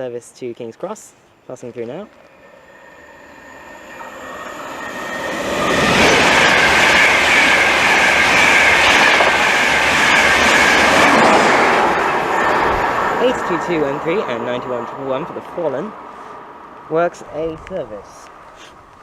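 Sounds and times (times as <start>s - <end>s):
train passing: 1.4s - 19.0s
wheels rushing on rail: 1.9s - 19.0s
high ringing tone: 2.0s - 8.8s.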